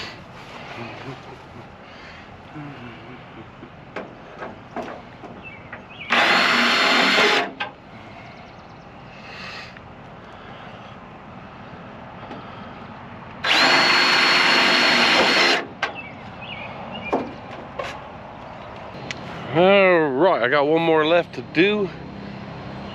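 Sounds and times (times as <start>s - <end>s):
power drill driving screws: 6.1s - 7.6s, 13.4s - 15.7s.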